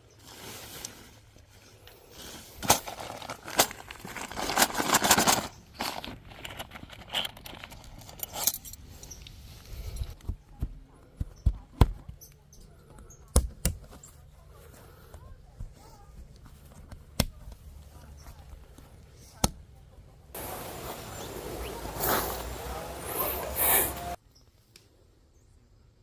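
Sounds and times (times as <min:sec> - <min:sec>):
tent fabric rustling: 0:00.0 - 0:07.0, 0:20.4 - 0:24.2.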